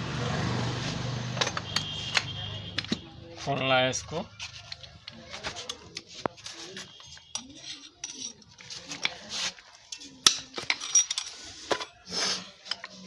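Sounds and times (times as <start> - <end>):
metal tools clinking and clattering: 4.4 - 12.0.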